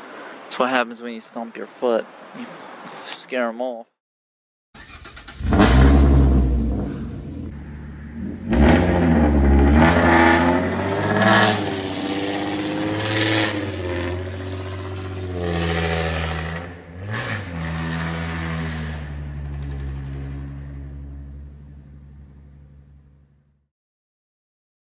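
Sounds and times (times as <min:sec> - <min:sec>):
engine revving and idling: 0:04.8 - 0:23.4.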